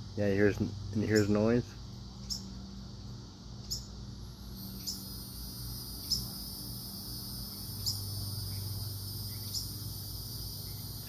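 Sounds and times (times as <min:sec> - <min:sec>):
steady high hiss: 0:00.0 - 0:11.0
fledgling bird chirping: 0:04.6 - 0:11.0.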